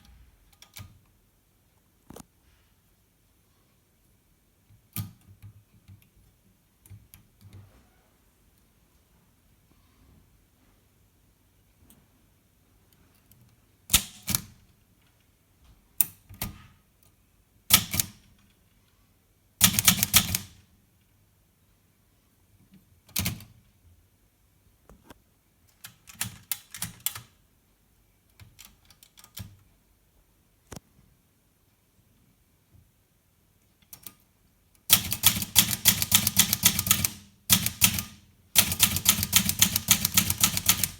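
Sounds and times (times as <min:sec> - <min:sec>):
typewriter key strikes: 0:19.6 - 0:20.5, 0:34.9 - 0:40.9.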